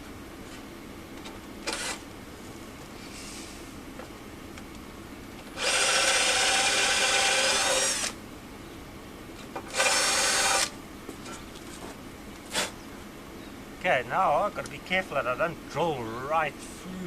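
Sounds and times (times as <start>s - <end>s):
power drill drilling into metal: 1.7s - 2.0s, 5.6s - 8.2s, 9.7s - 10.7s.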